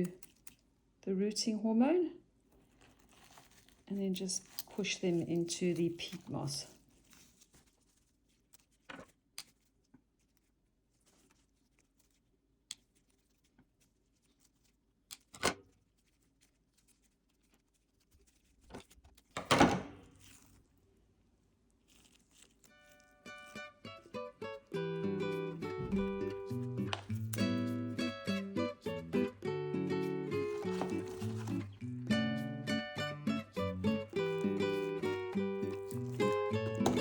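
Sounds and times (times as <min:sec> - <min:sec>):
rustling in potting mix: 0:02.4 - 0:19.4, 0:20.0 - 0:29.3, 0:29.9 - 0:37.0
acoustic guitar strummed and plucked: 0:23.2 - 0:37.0.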